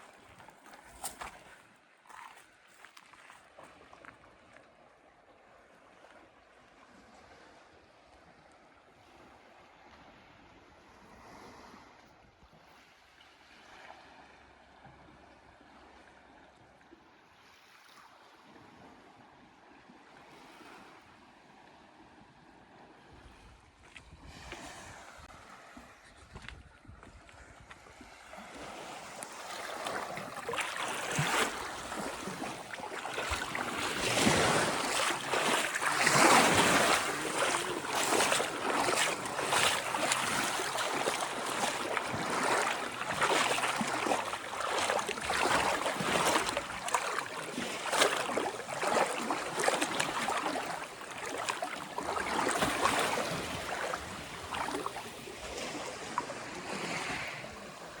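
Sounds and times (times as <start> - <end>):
sea waves washing onto shore: 28.4 - 58.0.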